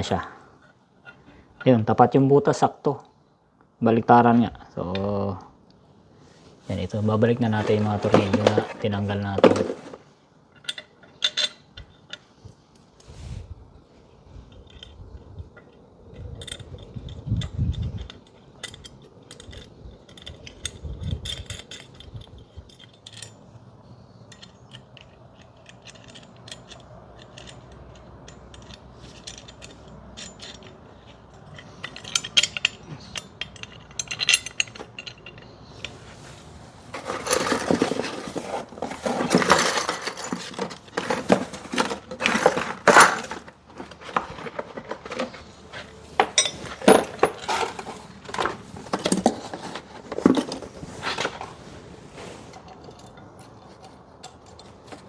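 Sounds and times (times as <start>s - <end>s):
metal screws clinking and scraping: 7.5s - 13.1s, 14.4s - 51.7s, 52.4s - 55.0s
metal clattering: 24.3s - 35.9s, 36.9s - 51.5s.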